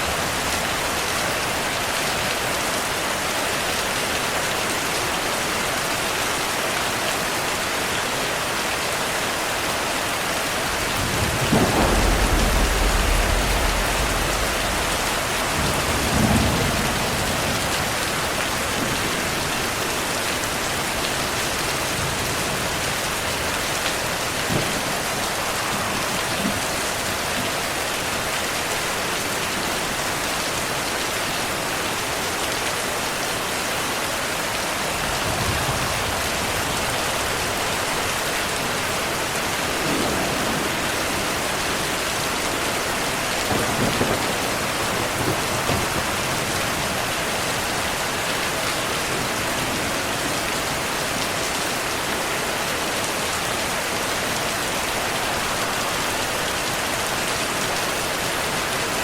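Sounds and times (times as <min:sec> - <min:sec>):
steady rain: 0:00.0 - 0:59.0
thunder rumbling: 0:10.5 - 0:19.8, 0:20.8 - 0:27.7, 0:34.9 - 0:38.0, 0:39.4 - 0:48.0.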